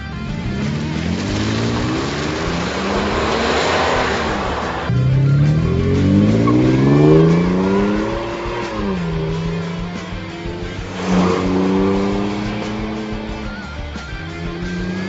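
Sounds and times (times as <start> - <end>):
car exhaust under acceleration: 0.0 - 15.0.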